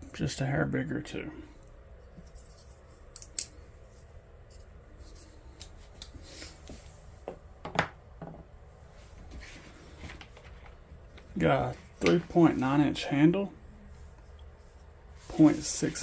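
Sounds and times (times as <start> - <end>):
folding knives clicking: 3.1 - 3.6.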